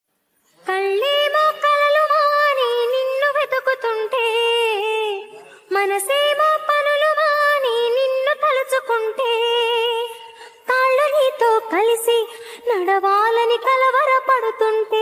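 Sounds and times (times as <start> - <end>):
woman singing wordless melody: 0.6 - 15.0.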